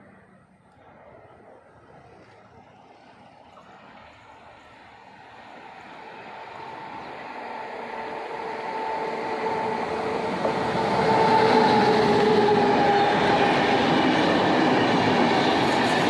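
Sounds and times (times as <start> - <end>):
faint locomotive whine: 0.0 - 16.0
train rumbling past: 4.5 - 16.0.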